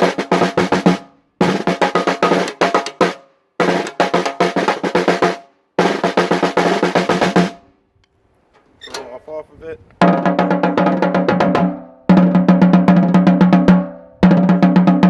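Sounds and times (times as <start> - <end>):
snare drum rapid hits: 0.0 - 7.6, 10.0 - 13.9.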